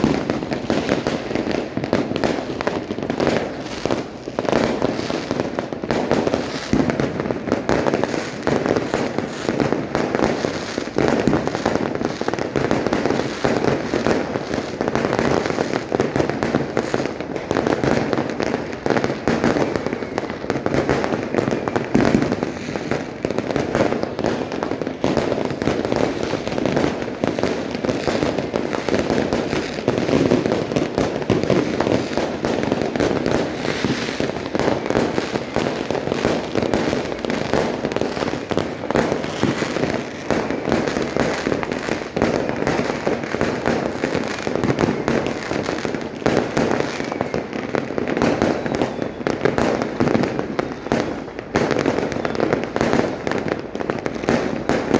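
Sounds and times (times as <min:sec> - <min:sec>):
fireworks and firecrackers banging: 0:00.0 - 0:54.9.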